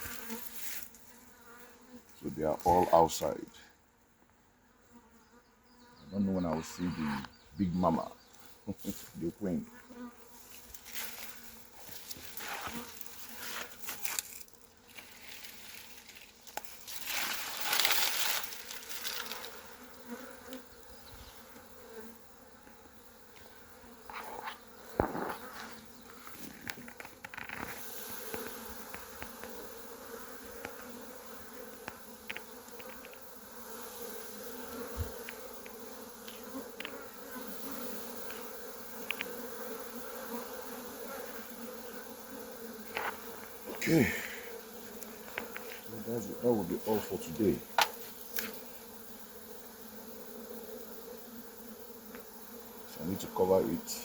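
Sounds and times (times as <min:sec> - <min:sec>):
rustling and scraping: 0:00.0 - 0:01.1, 0:10.3 - 0:19.7, 0:24.1 - 0:29.4, 0:42.8 - 0:43.8, 0:45.0 - 0:45.9
bees buzzing: 0:00.0 - 0:54.0.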